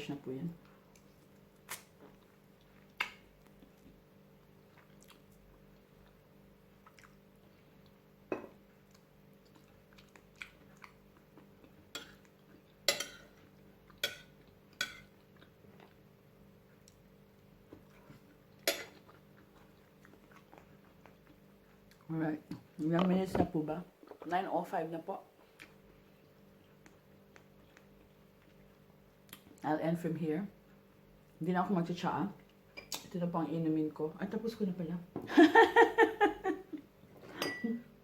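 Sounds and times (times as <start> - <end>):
faint steady hum: 0.0 - 38.0.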